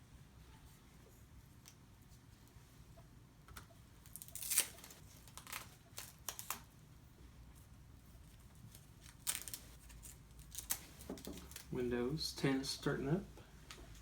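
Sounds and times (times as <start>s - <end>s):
rustling and scraping handling noises: 7.5s - 11.8s.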